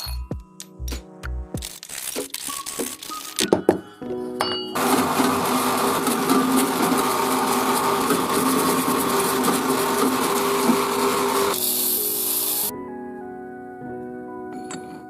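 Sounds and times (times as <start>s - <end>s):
power tool grinding metal: 4.8s - 12.7s.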